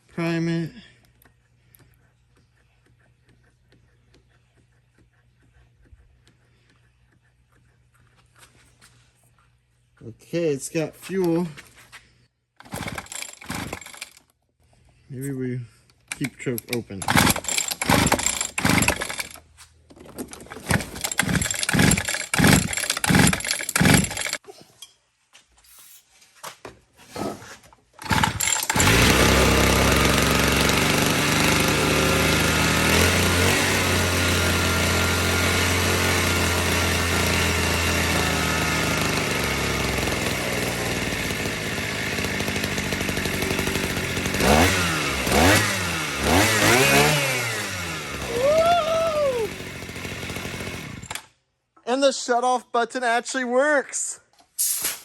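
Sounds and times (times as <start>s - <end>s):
small two-stroke engine: 12.6s - 14.2s, 16.1s - 19.4s, 20.2s - 24.4s, 28.0s - 51.4s.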